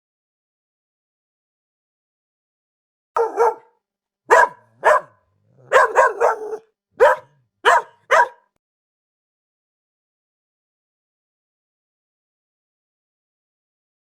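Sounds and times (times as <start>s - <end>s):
dog barking: 3.2s - 3.7s, 4.3s - 8.5s.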